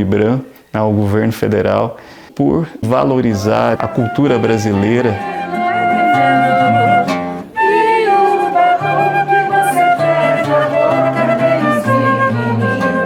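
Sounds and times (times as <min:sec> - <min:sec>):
flute melody: 0:03.0 - 0:13.0.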